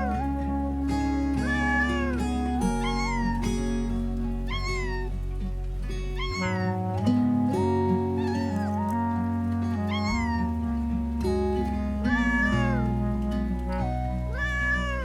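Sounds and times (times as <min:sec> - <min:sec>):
cat meowing: 0:00.0 - 0:00.4, 0:01.4 - 0:05.3, 0:06.0 - 0:06.8, 0:08.2 - 0:10.8, 0:12.0 - 0:12.9, 0:13.7 - 0:15.0
background music of held chords: 0:00.0 - 0:15.0.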